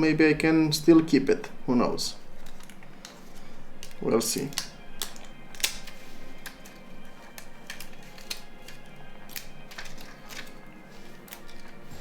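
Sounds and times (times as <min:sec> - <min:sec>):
quiet background music: 0:00.0 - 0:12.0
plastic phone parts clicking: 0:03.8 - 0:10.6.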